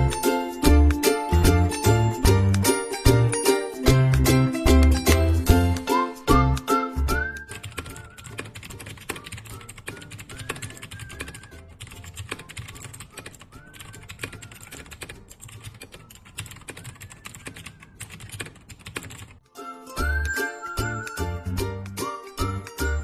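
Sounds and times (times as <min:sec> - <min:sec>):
background music: 0:00.0 - 0:18.3, 0:19.3 - 0:23.0
mechanical keyboard typing: 0:07.5 - 0:19.4.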